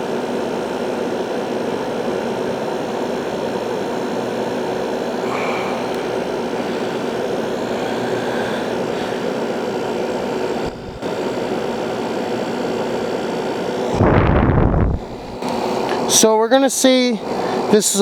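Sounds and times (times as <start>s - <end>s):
faint hum: 0.0s - 16.2s
air conditioner rushing: 1.8s - 18.0s
loud low rumble: 14.0s - 15.4s.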